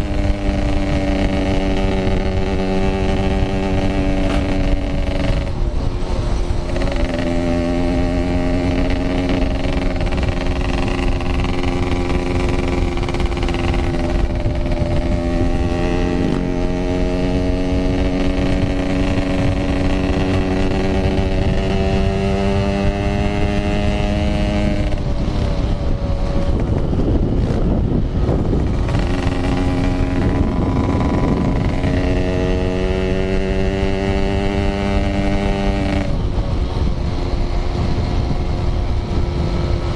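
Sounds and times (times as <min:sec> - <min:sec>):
rushing wind noise: 0:00.0 - 0:39.9
two-stroke motorcycle engine: 0:00.0 - 0:39.9.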